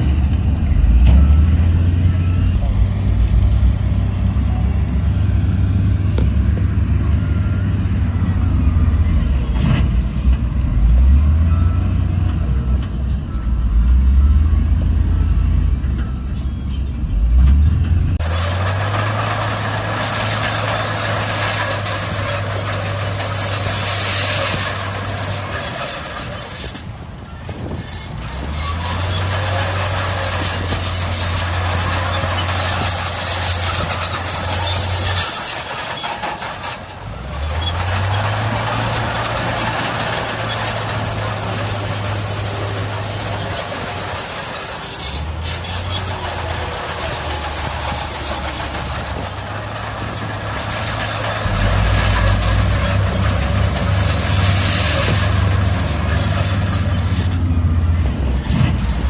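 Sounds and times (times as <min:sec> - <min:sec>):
bulldozer diesel engine revving: 0:00.0 - 0:27.2, 0:27.8 - 0:59.0
steel tracks clattering and squealing: 0:00.0 - 0:59.0.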